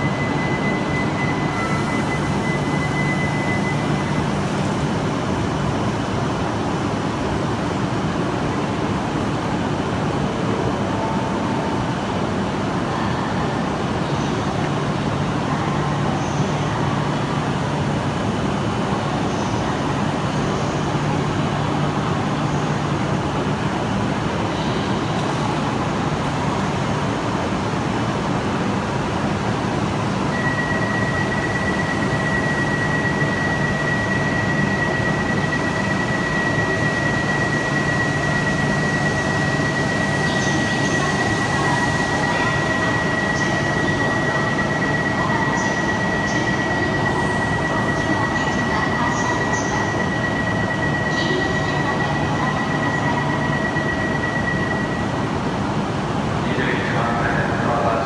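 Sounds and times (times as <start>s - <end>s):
steady high tone: 0.0s - 5.2s, 30.3s - 55.6s
train rumble and hum: 0.0s - 58.0s.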